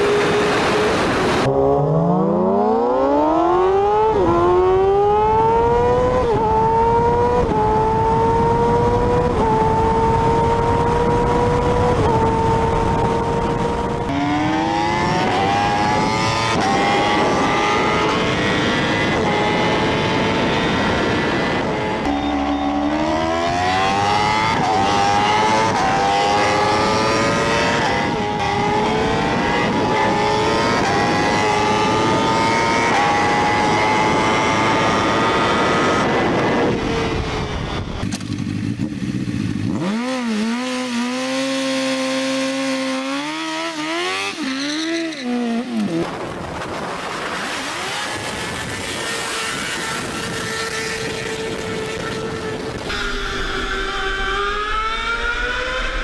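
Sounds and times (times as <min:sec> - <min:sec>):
motorcycle engine accelerating: 0:00.0 - 0:56.0
ride noise: 0:42.6 - 0:56.0.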